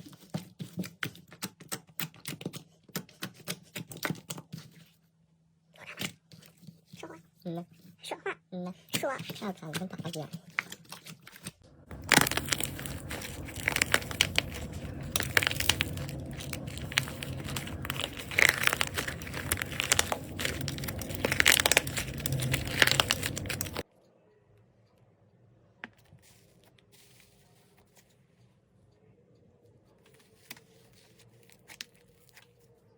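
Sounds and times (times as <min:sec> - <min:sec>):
slime crackling when squeezed: 0:11.9 - 0:23.8.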